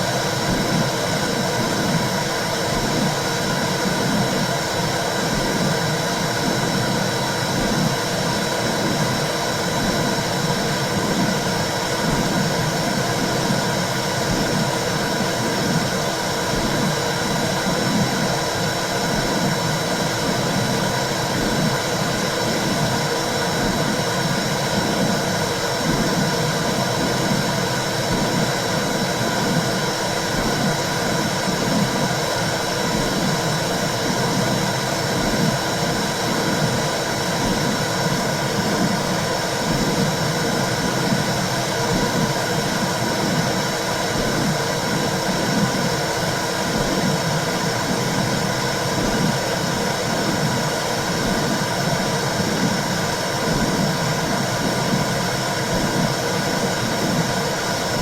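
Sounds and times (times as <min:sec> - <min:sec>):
low heartbeat pulse: 0:24.7 - 0:32.0, 0:41.9 - 0:45.9, 0:46.7 - 0:49.4, 0:50.1 - 0:56.2.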